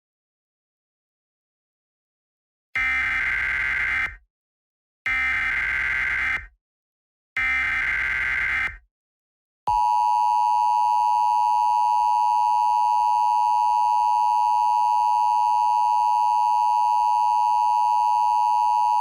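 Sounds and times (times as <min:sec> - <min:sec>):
steady two-tone alarm: 0:02.8 - 0:04.2, 0:05.1 - 0:06.5, 0:07.4 - 0:08.8, 0:09.7 - 0:19.0.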